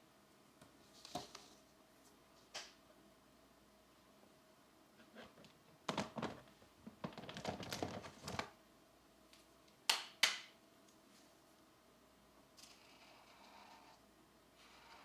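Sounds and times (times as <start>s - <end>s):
pencil scratching on paper: 12.8s - 14.0s, 14.6s - 15.0s.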